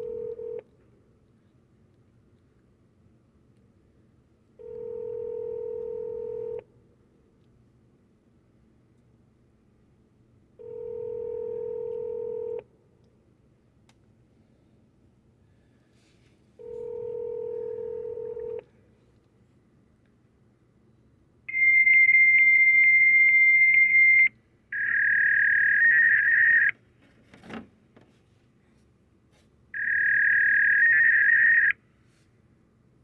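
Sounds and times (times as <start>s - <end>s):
electronic telephone tones: 0.0s - 0.6s, 4.6s - 6.6s, 10.6s - 12.6s, 16.6s - 18.6s, 21.5s - 26.8s, 29.8s - 31.8s.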